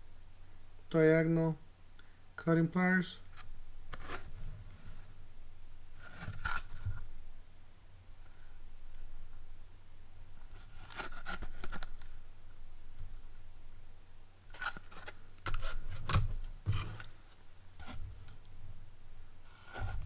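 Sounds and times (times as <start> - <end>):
packaging clicks and scrapes: 10.6 - 12.0, 14.5 - 17.1.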